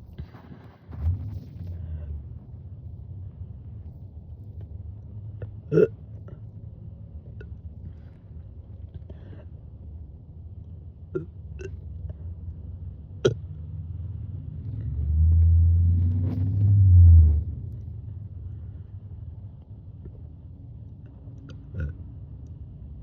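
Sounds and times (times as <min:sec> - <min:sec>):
steady low hum: 0:00.0 - 0:23.0
woman burping: 0:05.7 - 0:06.0, 0:21.7 - 0:22.0.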